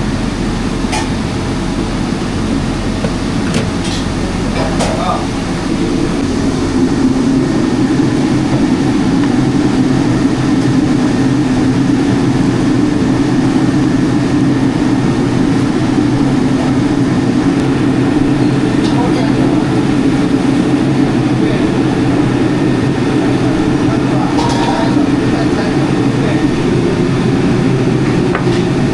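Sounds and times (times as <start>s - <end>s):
mechanical drone with low hum: 0.0s - 28.9s.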